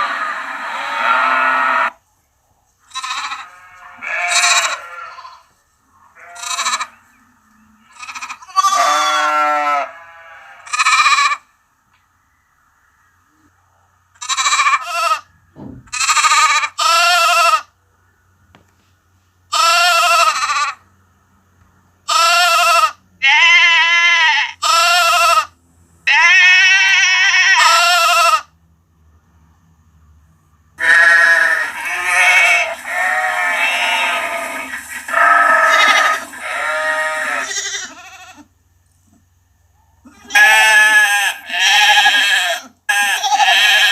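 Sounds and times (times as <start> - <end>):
sheep bleating: 0.0 - 2.0, 2.9 - 5.5, 6.1 - 7.1, 7.8 - 11.4, 14.2 - 15.3, 15.9 - 17.7, 19.5 - 20.8, 22.1 - 25.5, 26.1 - 28.5, 30.8 - 38.5, 40.1 - 43.9.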